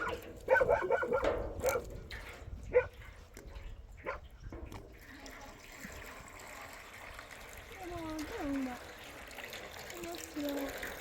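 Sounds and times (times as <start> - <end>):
dog barking: 0.0 - 1.8, 2.7 - 3.0, 4.0 - 4.2.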